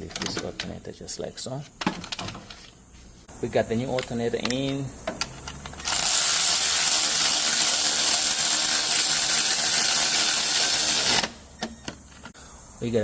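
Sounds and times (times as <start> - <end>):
power tool running: 5.8 - 11.4.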